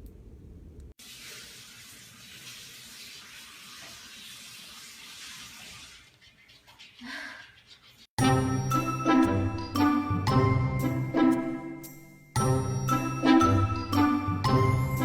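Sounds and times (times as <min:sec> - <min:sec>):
running water hiss: 0:01.0 - 0:06.3.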